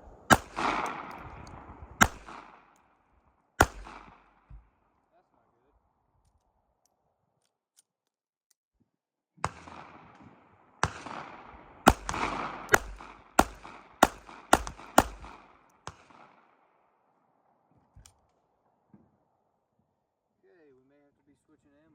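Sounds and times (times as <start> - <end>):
pistol shots echoing: 0.3 - 2.8, 3.6 - 4.5, 9.4 - 16.6.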